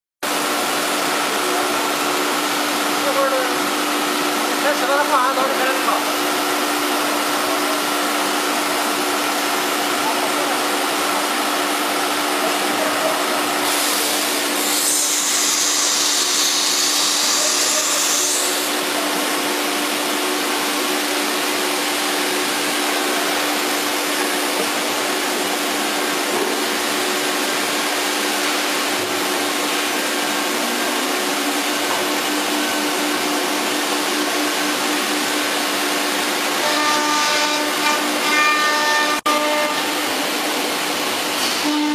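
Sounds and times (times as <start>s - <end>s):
machine drone and hum: 13.1s - 41.9s.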